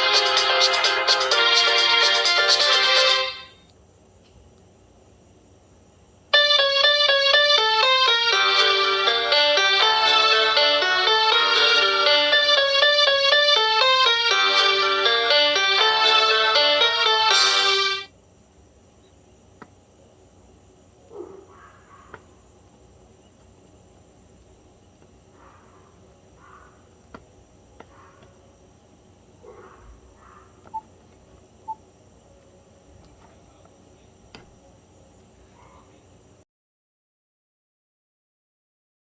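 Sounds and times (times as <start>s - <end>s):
steady hiss with high whine: 0.0s - 6.5s, 13.6s - 21.1s, 22.2s - 36.4s.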